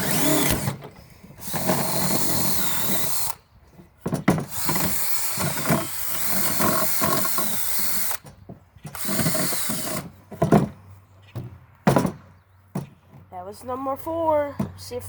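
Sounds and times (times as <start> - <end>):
cordless drill drilling wood: 0.0 - 3.4, 4.4 - 8.3, 8.9 - 10.2
knocks: 11.4 - 13.0.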